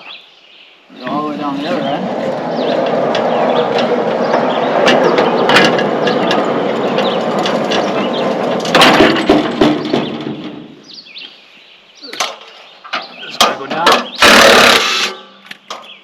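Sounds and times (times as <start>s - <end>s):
sharp knocks: 2.8s - 10.7s
crank jack ratchet clatter: 14.2s - 15.2s.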